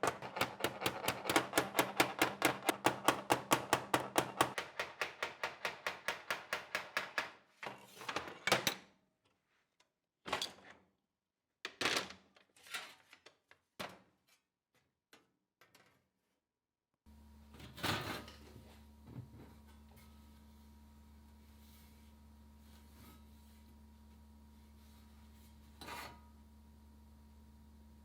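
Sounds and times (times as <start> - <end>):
knocks and clatters: 0.0 - 7.4.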